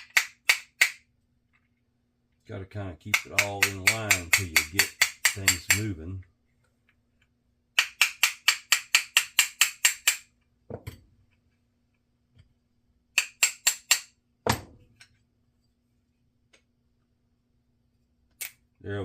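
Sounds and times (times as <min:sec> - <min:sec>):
hammer tapping metal punch: 0:03.1 - 0:06.0, 0:07.8 - 0:11.0, 0:13.2 - 0:14.8.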